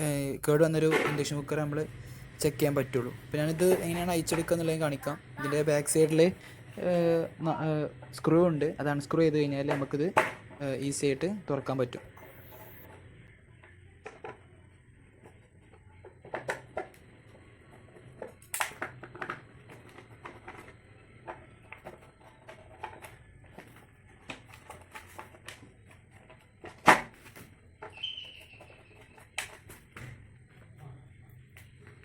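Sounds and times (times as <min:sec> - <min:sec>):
high squeak: 0:27.9 - 0:29.0.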